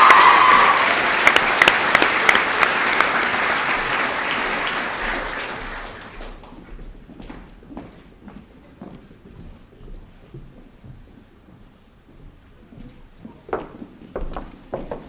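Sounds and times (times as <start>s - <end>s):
audience applauding: 0.0s - 6.6s.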